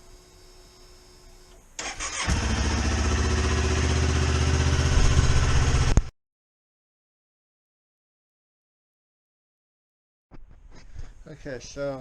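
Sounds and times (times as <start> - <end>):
motorcycle engine starting and running: 1.8 - 6.1.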